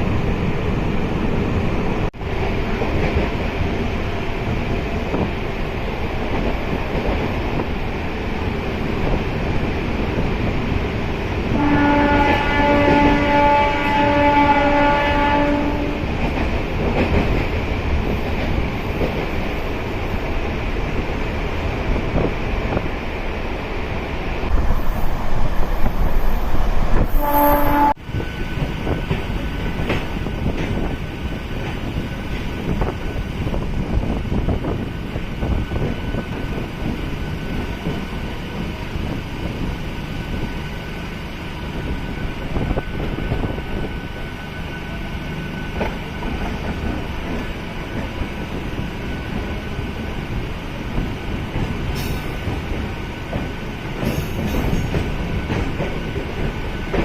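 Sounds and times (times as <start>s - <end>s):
train horn blast: 11.6s - 16.1s, 27.0s - 28.0s.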